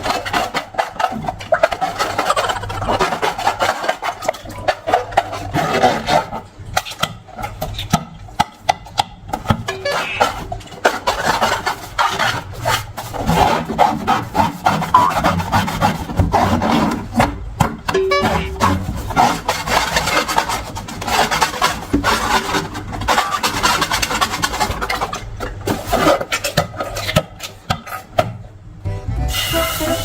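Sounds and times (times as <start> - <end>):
rubbing and squeezing slime: 0.0 - 9.2, 9.8 - 17.6, 18.2 - 28.4
balloon squeaks: 9.7 - 10.5, 14.9 - 15.4, 18.2 - 19.4.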